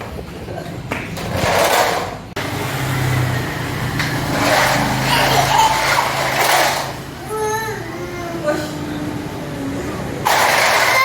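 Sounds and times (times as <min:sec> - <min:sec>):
toy electric motor whirring: 0:04.3 - 0:07.7, 0:10.2 - 0:11.0.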